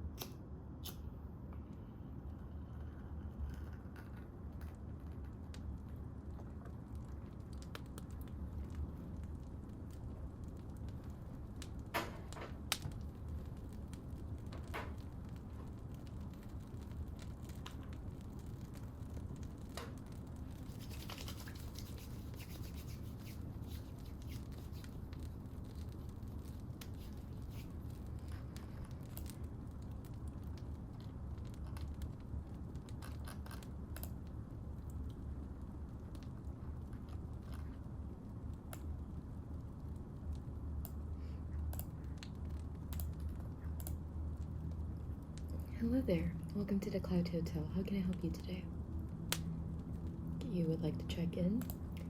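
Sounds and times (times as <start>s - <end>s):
fire sharp snaps: 0.0s - 2.0s, 2.8s - 45.7s, 49.1s - 50.5s
fire pops and crackles: 0.0s - 50.5s
fire low rumble: 0.0s - 52.0s.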